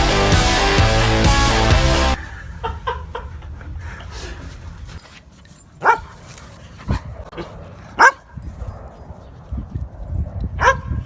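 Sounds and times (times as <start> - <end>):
dog barking: 5.8 - 6.1, 7.4 - 8.3, 10.6 - 11.0.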